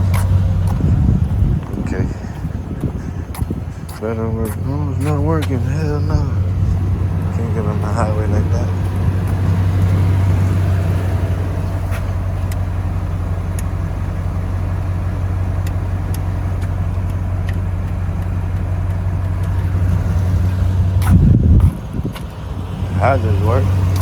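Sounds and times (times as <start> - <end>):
car engine running: 0.0 - 24.0
faint clicks: 13.5 - 13.8, 15.5 - 19.8.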